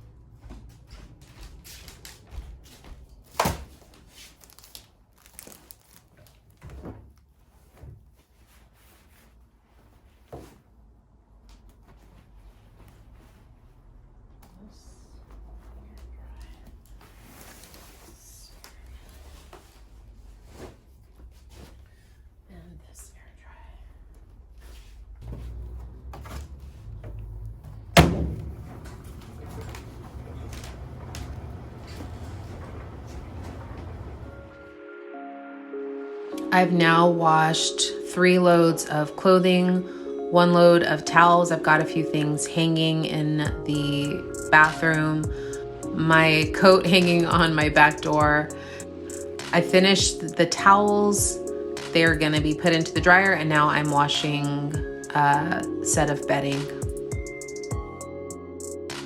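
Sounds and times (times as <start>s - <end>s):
rustling: 0.8s - 34.6s
low steady hum: 11.8s - 34.7s
sharp knock: 28.0s - 28.7s
loud bang with ringing: 28.0s - 29.0s.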